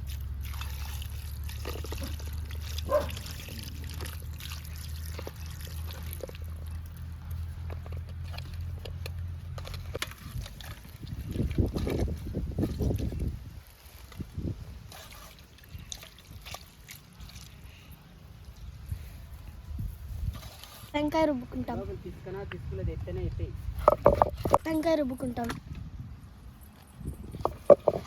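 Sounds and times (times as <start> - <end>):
water trickling and sloshing: 0.0 - 21.0.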